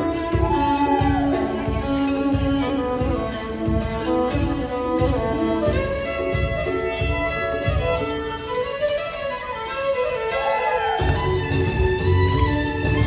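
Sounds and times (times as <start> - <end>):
backing track with low beat: 0.0 - 8.6
violin melody: 0.0 - 13.0.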